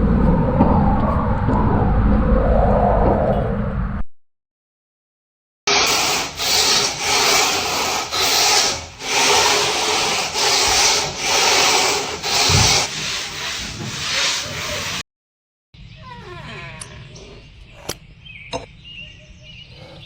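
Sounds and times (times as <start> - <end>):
rough scraping strokes: 5.7 - 15.0.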